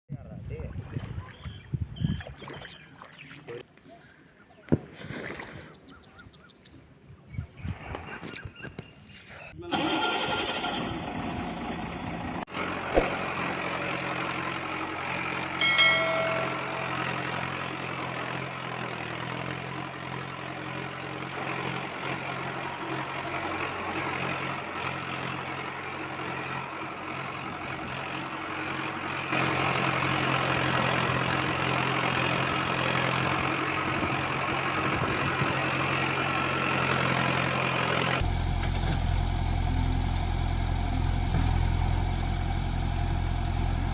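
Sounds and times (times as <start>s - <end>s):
vehicle engine idling: 11.3s - 43.9s.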